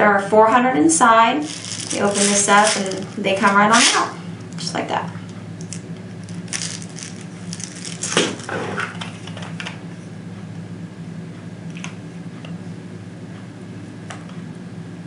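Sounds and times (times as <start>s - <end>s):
steady low hum: 0.0s - 15.0s
plastic pellets rattling: 1.4s - 3.9s, 5.6s - 8.5s.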